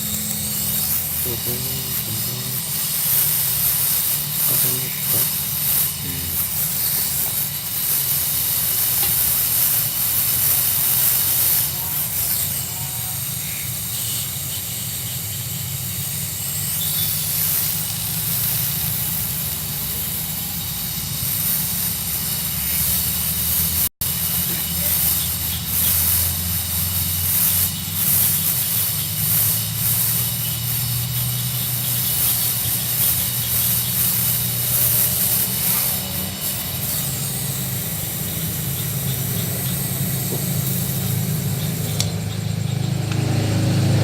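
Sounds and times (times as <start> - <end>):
welding torch flame hissing: 0.0 - 44.0.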